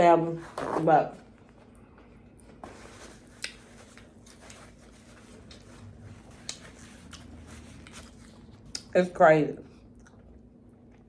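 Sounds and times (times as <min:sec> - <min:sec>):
close chewing: 0:03.3 - 0:08.9.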